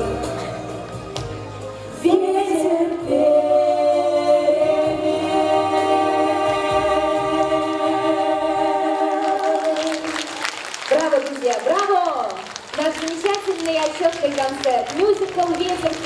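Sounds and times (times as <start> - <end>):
choir singing: 2.0 - 10.2.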